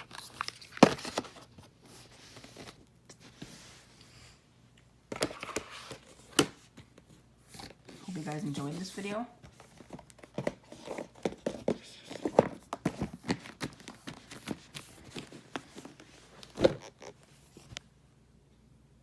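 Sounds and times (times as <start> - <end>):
objects being handled: 5.1 - 17.8.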